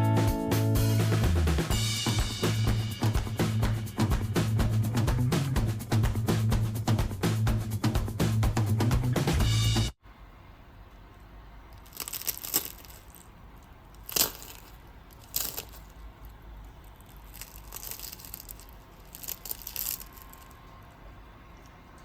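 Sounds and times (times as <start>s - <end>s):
pastry crust crackling and crunching: 11.7s - 21.7s.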